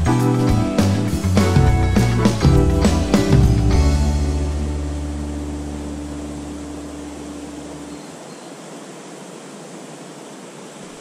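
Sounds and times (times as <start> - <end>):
low background music: 0.0 - 7.9
mountain stream rushing: 3.4 - 11.0.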